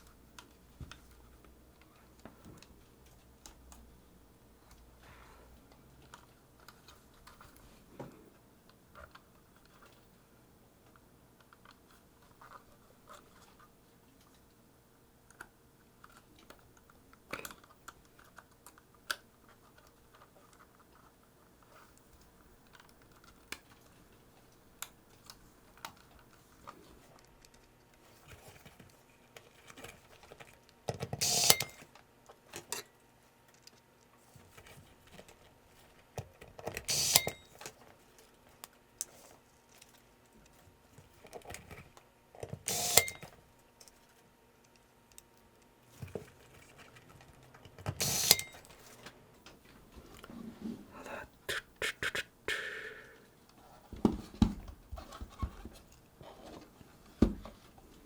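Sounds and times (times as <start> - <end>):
noisy bursts: 50.9 - 53.4.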